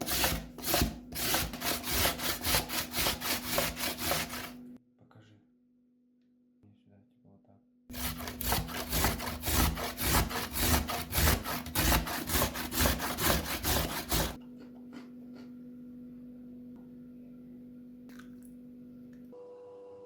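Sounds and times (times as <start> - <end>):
vegetables rasping on a grater: 0.0 - 4.6, 7.9 - 14.4.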